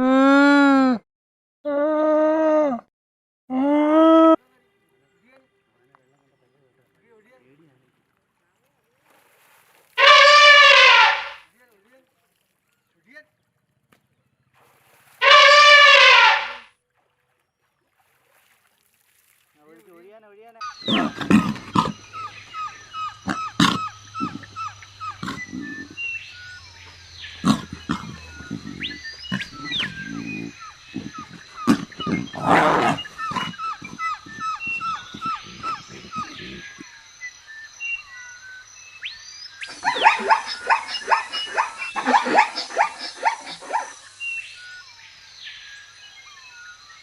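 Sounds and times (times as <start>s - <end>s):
low animal calls: 10.0s - 11.4s, 15.2s - 16.6s, 20.6s - 37.0s, 39.6s - 44.0s
short falling animal calls: 10.0s - 11.4s, 15.2s - 16.6s, 20.6s - 36.9s
long high rising animal calls: 20.6s - 36.9s
faint bird chirps: 20.6s - 47.0s
dog yelping: 20.7s - 26.0s, 27.4s - 36.6s, 39.7s - 43.9s.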